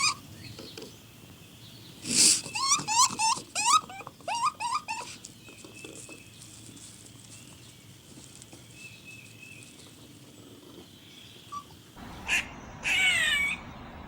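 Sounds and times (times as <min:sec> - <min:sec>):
animal calling: 0:00.0 - 0:00.9, 0:02.0 - 0:06.2, 0:10.2 - 0:14.0.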